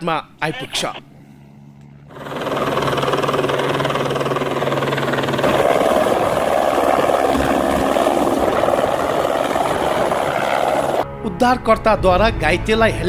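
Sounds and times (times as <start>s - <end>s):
helicopter rotor and turbine noise: 1.1s - 11.1s.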